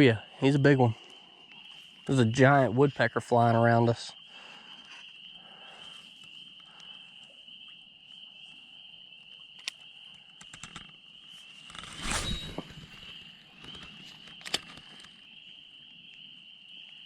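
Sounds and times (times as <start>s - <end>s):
insects chorus: 0.0s - 17.0s
rustle: 10.6s - 15.8s.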